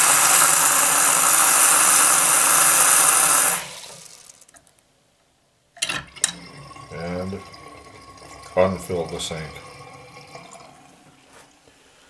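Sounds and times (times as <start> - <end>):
faucet running into basin: 0.0 - 4.6, 6.1 - 11.4.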